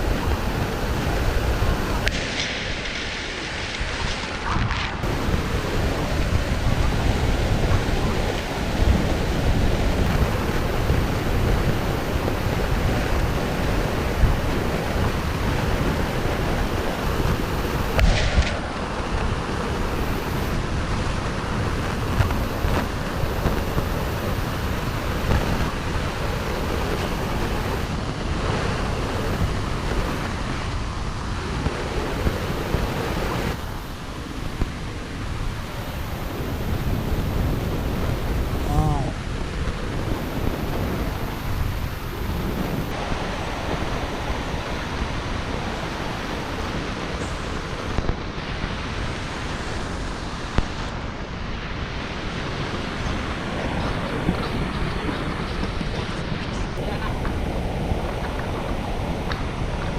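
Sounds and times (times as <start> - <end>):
waterfall rushing: 0.0 - 59.9.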